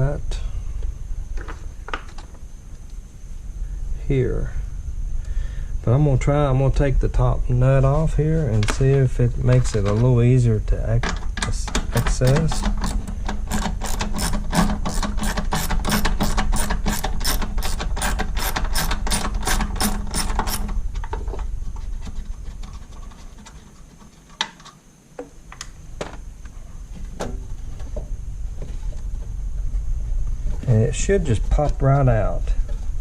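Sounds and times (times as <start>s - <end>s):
ratchet clicking: 11.9s - 20.7s.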